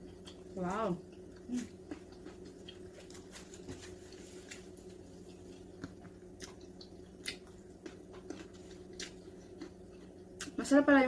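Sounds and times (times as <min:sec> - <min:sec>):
person chewing crunchy food: 0:00.0 - 0:10.6.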